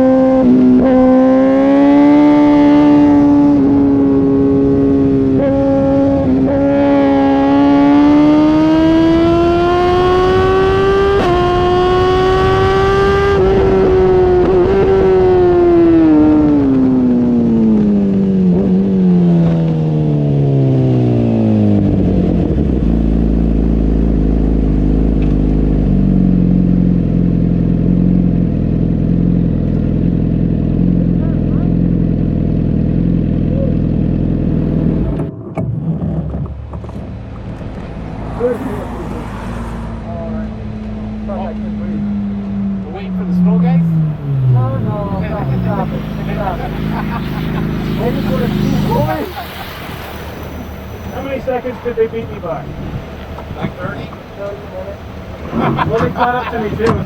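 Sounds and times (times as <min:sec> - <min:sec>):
motorcycle engine revving and shifting: 0:00.0 - 0:57.0
motorcycle engine idling: 0:21.9 - 0:35.2.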